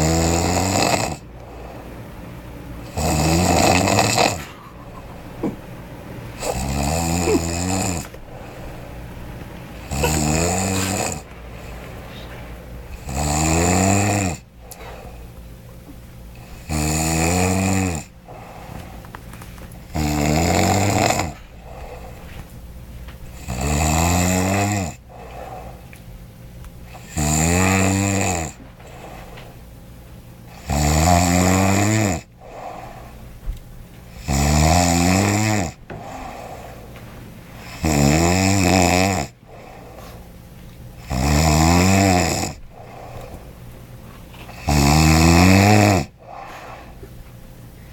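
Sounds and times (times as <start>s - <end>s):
man snoring: 0.0s - 1.3s, 2.8s - 5.6s, 6.4s - 8.8s, 9.8s - 11.7s, 12.9s - 14.8s, 16.4s - 18.7s, 19.9s - 22.2s, 23.3s - 25.8s, 26.9s - 29.2s, 30.5s - 33.1s, 34.1s - 36.8s, 37.6s - 40.2s, 41.0s - 43.4s, 44.4s - 47.0s.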